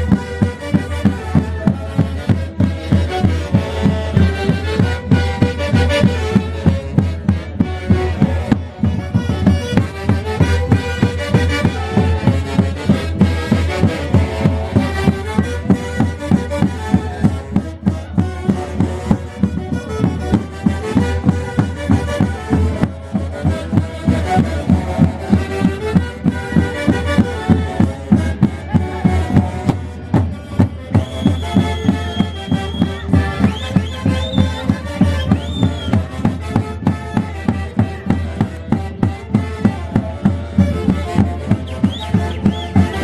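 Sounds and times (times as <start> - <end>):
steady drum beat: 0.0 - 43.0
wind instruments playing melody: 0.0 - 43.0.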